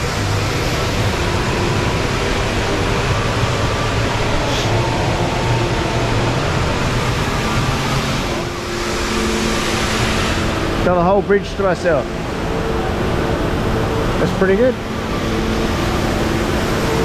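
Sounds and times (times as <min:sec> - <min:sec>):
indoor waterfall roaring: 0:00.0 - 0:17.0.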